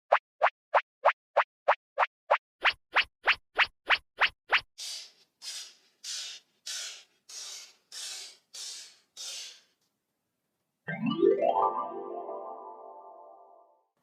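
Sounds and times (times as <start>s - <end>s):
short hissing whooshes: 4.8s - 9.7s.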